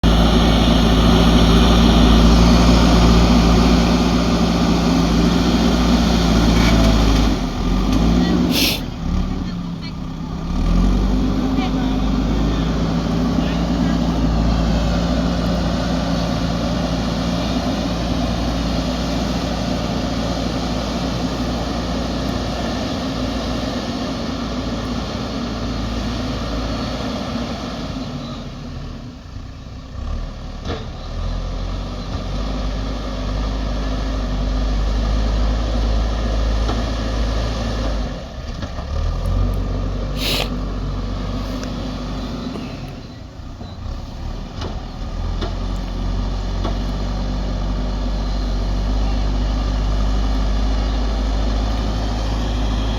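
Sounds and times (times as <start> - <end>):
diesel engine running: 0.0 - 52.9
short hiss: 8.5 - 9.0, 40.2 - 40.6.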